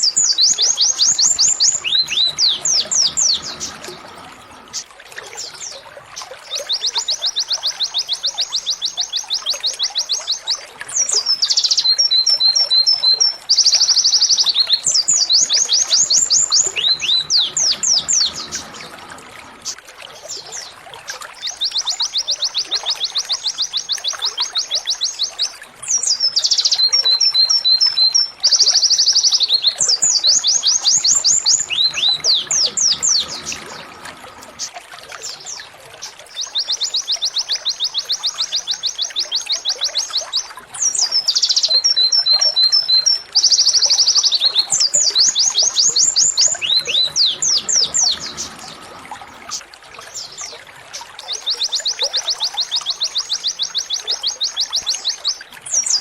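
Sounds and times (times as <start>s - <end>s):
canary singing: 0.0s - 4.9s, 6.6s - 19.8s, 21.4s - 34.6s, 36.4s - 48.9s.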